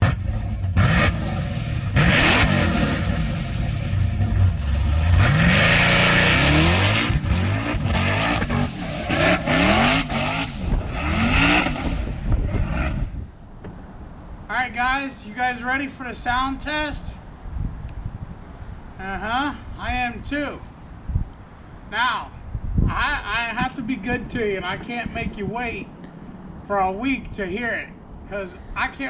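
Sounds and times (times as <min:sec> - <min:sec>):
motorcycle engine revving: 0:00.0 - 0:13.3.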